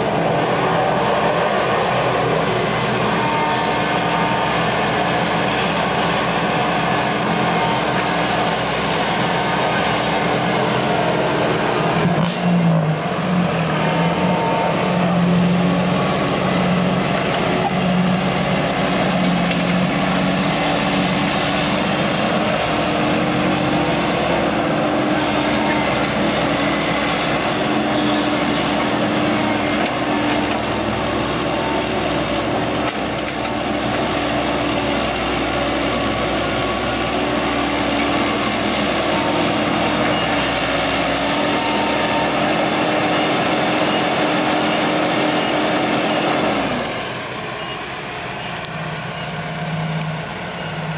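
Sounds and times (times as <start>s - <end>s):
excavator diesel engine: 0.0s - 50.9s.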